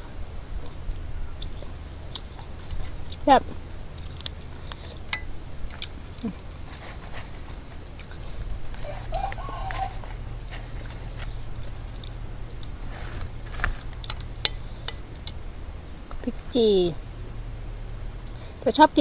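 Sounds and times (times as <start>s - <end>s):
steady low hum: 0.0s - 19.0s
person chewing: 1.3s - 3.2s, 3.9s - 5.1s, 5.7s - 15.3s.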